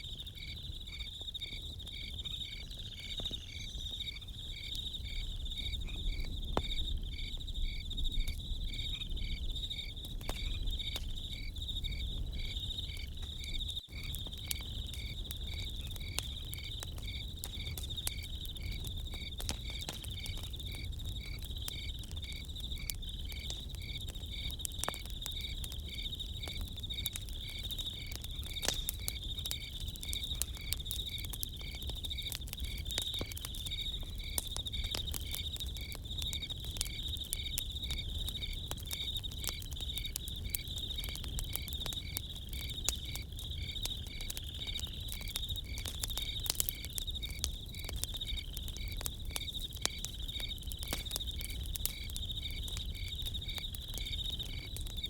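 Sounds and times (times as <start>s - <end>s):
campfire crackling: 0.0s - 55.0s
cricket chirping in regular beat: 0.0s - 55.0s
crickets chirring: 0.0s - 55.0s.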